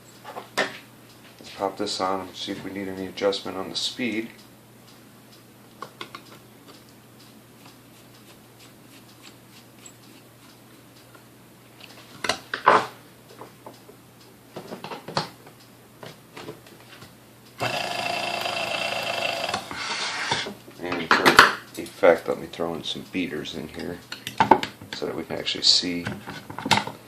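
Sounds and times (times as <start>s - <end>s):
mixer motor whirring: 17.6s - 20.5s.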